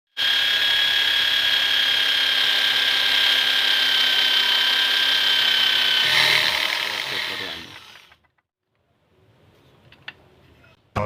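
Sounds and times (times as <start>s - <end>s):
power tool motor whining: 0.2s - 8.2s.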